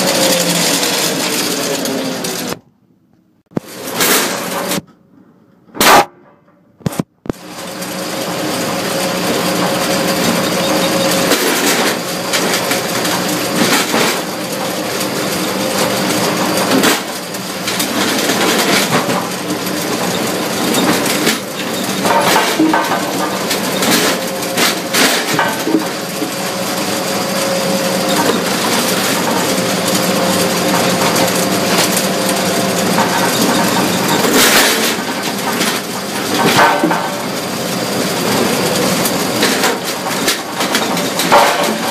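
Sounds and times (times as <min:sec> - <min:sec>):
logs knocking and clattering: 0:32.9 - 0:37.2, 0:39.4 - 0:41.9.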